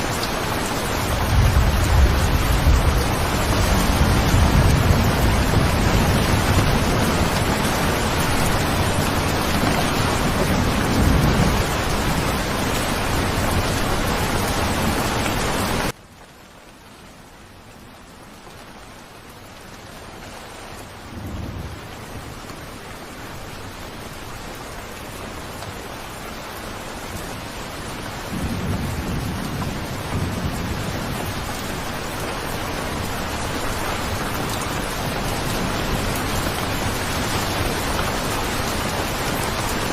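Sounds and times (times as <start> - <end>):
heavy rain: 0.0 - 39.9
thunder rolling: 1.0 - 14.7.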